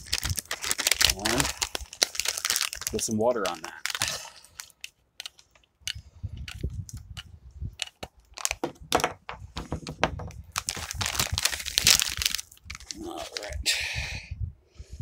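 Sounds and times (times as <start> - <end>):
plastic bag crinkling and rustling: 0.0 - 5.6, 7.8 - 13.6
crackles: 0.0 - 8.6, 10.5 - 13.6.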